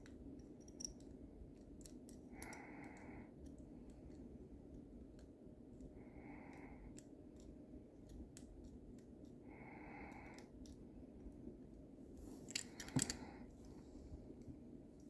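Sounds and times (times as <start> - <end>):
lock pick clicking and scraping: 0.4 - 2.6, 12.5 - 13.4.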